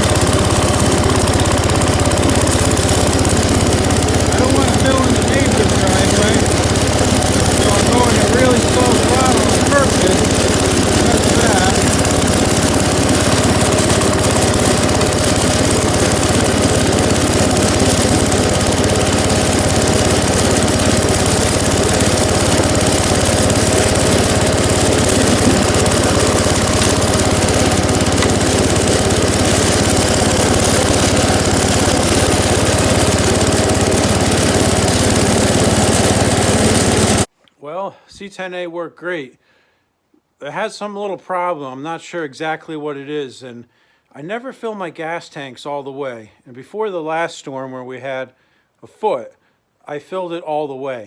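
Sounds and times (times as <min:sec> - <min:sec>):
tractor engine running under load: 0:00.0 - 0:37.3.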